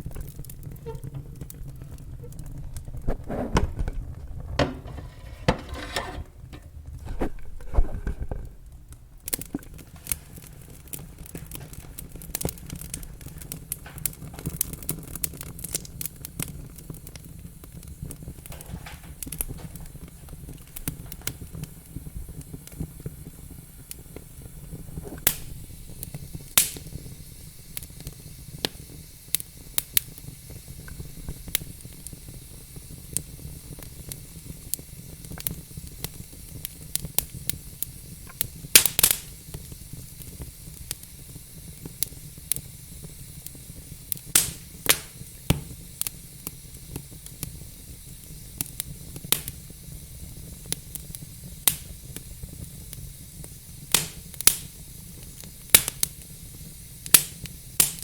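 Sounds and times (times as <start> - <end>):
logs crackling and popping: 0.0 - 4.6, 7.0 - 21.7, 34.1 - 42.7
fire flames rumbling: 0.0 - 50.6.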